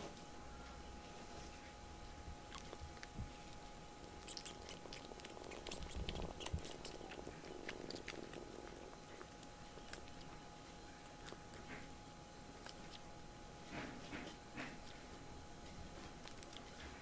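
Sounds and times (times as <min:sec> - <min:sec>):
kitten chewing: 0:01.4 - 0:17.0.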